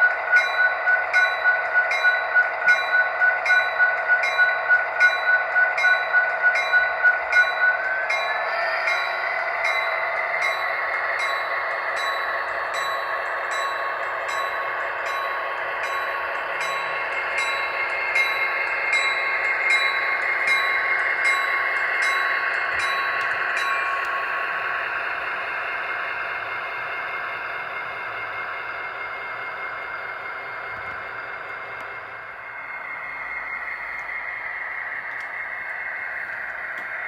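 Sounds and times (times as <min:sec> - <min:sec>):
locomotive bell ringing: 0:00.0 - 0:26.8.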